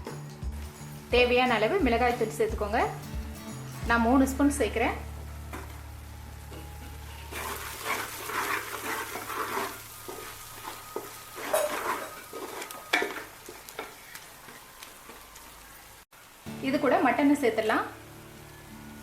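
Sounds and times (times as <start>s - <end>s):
paste sizzling in oil: 0.0s - 19.0s
spoon stirring and scraping pot: 7.3s - 14.6s.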